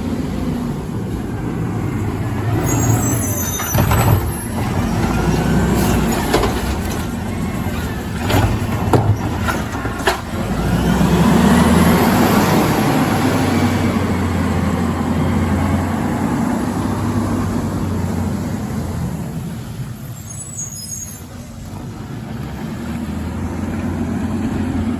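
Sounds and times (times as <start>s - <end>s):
garbage truck engine running: 0.0s - 20.0s
brief high squeal: 2.6s - 4.6s, 20.0s - 21.5s.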